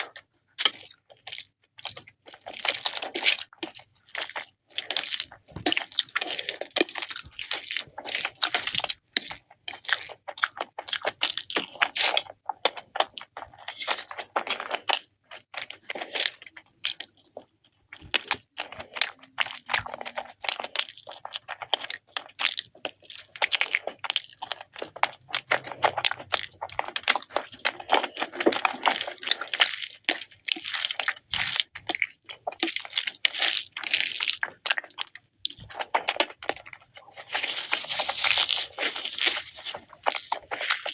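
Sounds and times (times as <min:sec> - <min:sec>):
person chewing crunchy food: 0:00.0 - 0:40.9.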